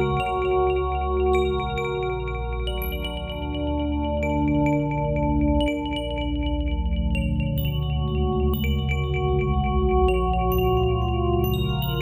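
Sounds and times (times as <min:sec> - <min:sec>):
chime-like bell notes: 0:10.6 - 0:12.0.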